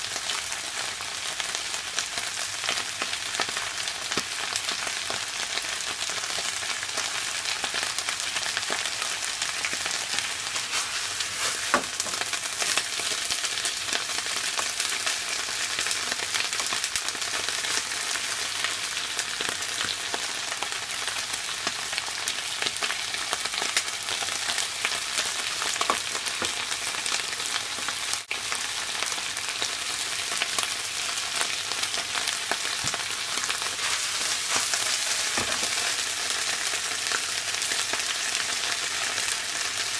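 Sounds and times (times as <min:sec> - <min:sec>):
cabbage sizzling in a pan: 0:00.0 - 0:39.9.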